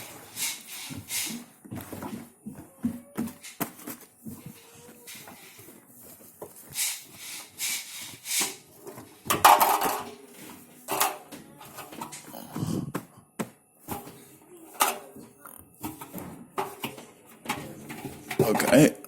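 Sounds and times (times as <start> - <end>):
knocks and clatter: 9.0 - 10.1, 15.8 - 19.0.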